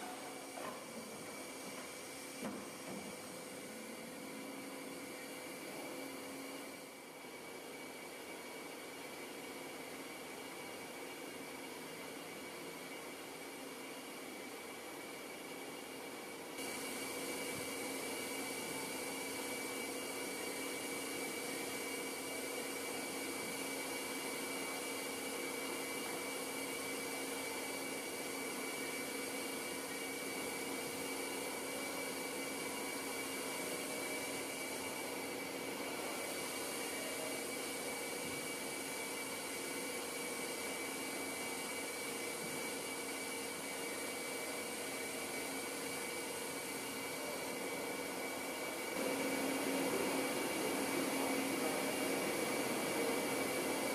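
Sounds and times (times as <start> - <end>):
milling machine whirring: 16.6 - 53.9.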